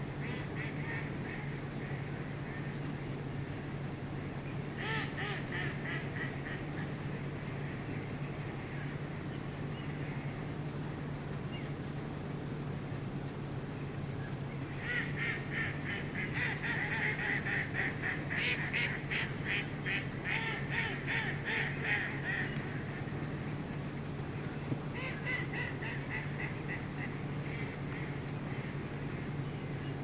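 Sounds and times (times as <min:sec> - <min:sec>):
steady low hum: 0:00.0 - 0:30.0
waterfowl calling: 0:04.8 - 0:08.2, 0:14.7 - 0:23.9, 0:24.6 - 0:29.9.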